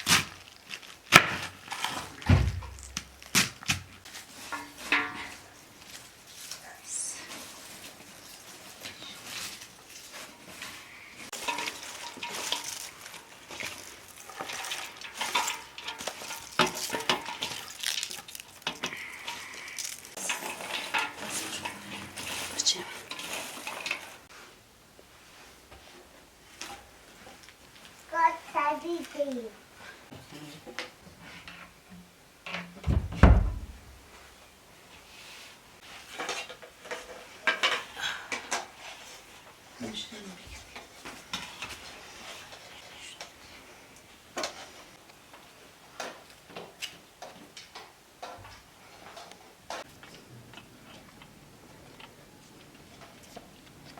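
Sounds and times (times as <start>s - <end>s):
cooking pots and utensils clattering: 1.2s - 6.5s, 7.3s - 24.3s, 35.8s - 53.9s
utensil scraping metal pot: 9.2s - 24.3s.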